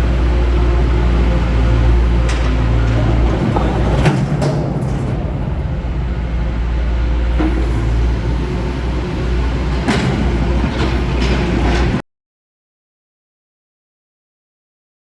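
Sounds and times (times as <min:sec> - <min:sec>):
diesel engine running: 0:00.0 - 0:12.0.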